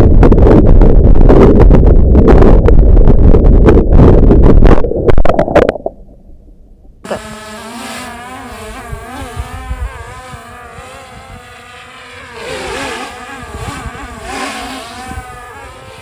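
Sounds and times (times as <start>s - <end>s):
wind rumbling on microphone: 0.0s - 7.4s, 8.1s - 16.0s
drone propellers whining: 7.0s - 16.0s.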